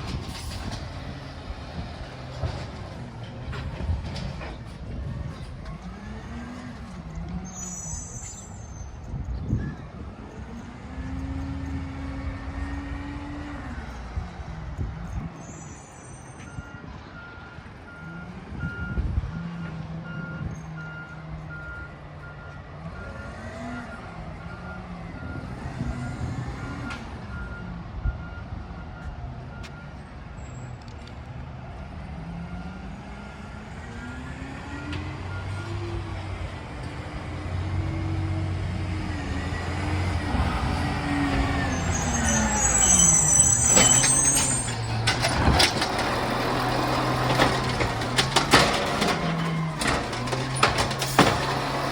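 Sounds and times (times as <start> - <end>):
diesel truck engine revving: 0.0 - 8.0, 32.0 - 51.9.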